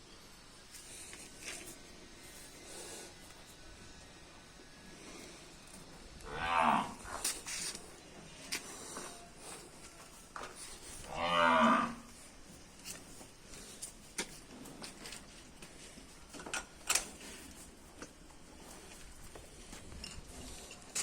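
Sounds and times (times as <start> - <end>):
cow mooing: 6.2 - 7.0, 11.0 - 12.1.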